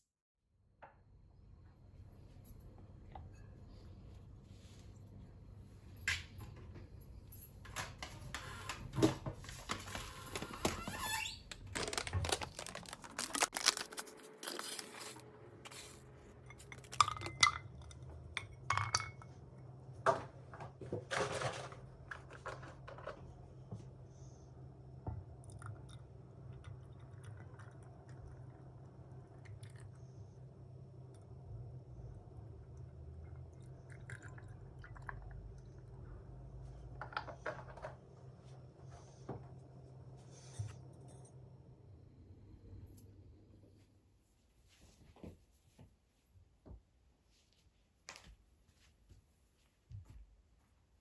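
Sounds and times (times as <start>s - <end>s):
objects being handled: 11.5s - 18.1s
low steady hum: 11.5s - 44.8s.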